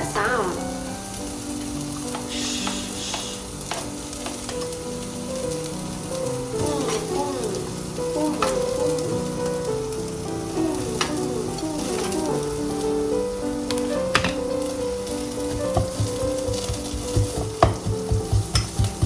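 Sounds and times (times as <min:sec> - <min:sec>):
background melody: 0:00.0 - 0:19.0
vegetables sizzling in a pan: 0:00.0 - 0:19.0
utensil clacking on pan: 0:15.5 - 0:19.0.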